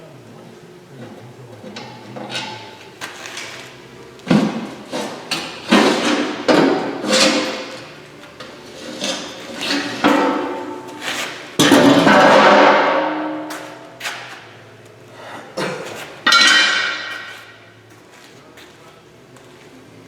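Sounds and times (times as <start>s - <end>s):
metal knocks and clanks: 4.3s - 7.8s, 8.4s - 14.3s, 16.3s - 17.6s
loud ringing metal clang: 9.7s - 11.0s, 11.6s - 13.8s, 16.3s - 17.7s.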